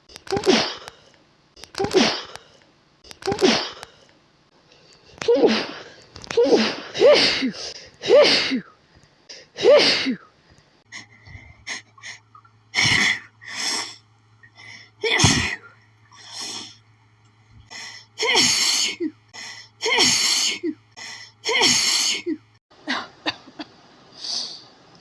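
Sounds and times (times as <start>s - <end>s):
woman sneezing: 5.3s - 8.6s, 9.6s - 10.2s.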